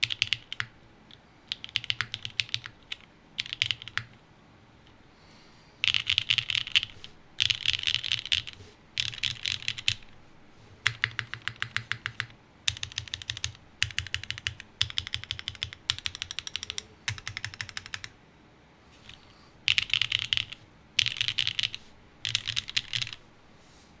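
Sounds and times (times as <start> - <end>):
mechanical keyboard typing: 0.0 - 0.8, 1.5 - 4.2, 5.8 - 10.1, 10.8 - 18.1, 19.0 - 23.2.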